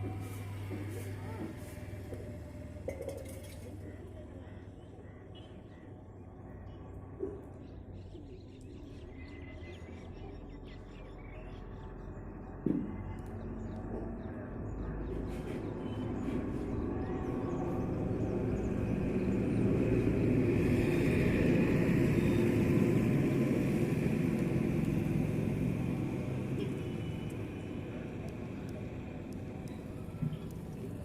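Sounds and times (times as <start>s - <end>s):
vehicle passing by: 16.4s - 31.0s.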